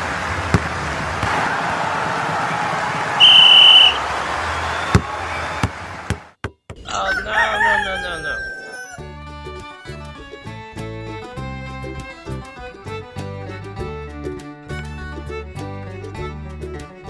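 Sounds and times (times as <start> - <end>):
rooster crowing: 6.9 - 9.1
music: 8.9 - 17.0.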